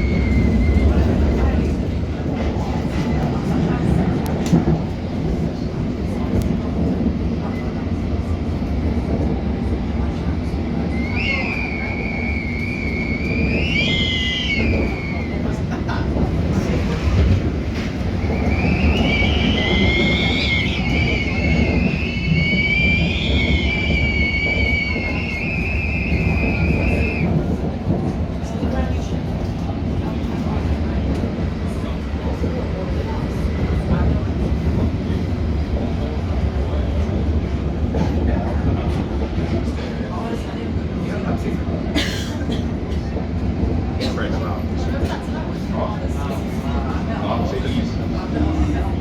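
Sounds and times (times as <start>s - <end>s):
train wheels rumbling on rail: 0.0s - 49.0s
high-pitched train whistling tone: 10.9s - 15.5s, 18.2s - 27.4s.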